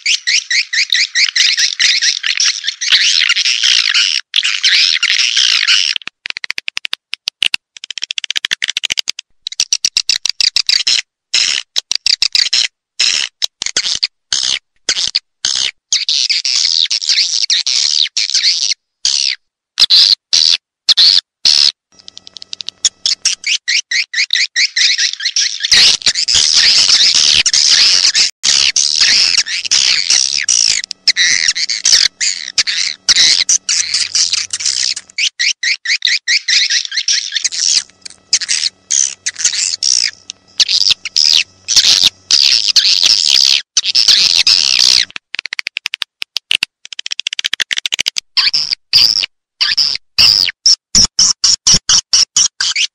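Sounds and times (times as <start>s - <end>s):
rapid sharp clicks: 22.0s - 23.5s, 25.8s - 35.2s, 37.5s - 43.5s
swiftlets chirping and twittering: 22.0s - 45.1s.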